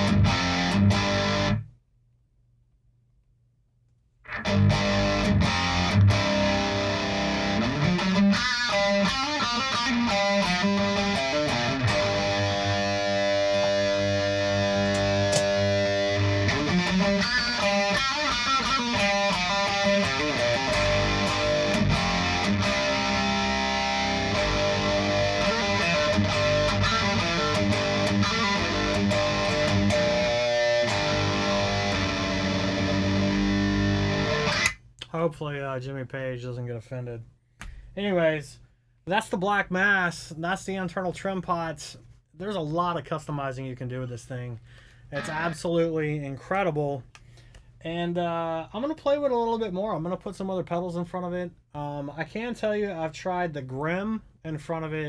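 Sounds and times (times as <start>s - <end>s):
overdriven electric guitar riff: 0.0s - 1.7s, 4.3s - 34.8s, 45.2s - 45.6s.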